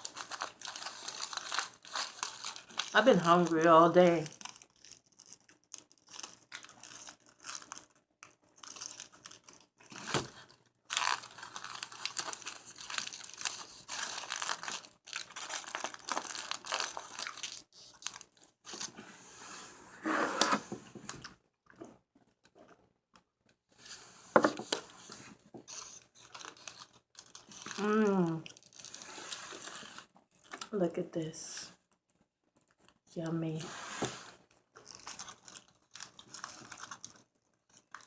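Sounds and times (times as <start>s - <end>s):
paper crinkling: 0.0s - 19.0s, 24.3s - 30.6s, 33.6s - 38.0s.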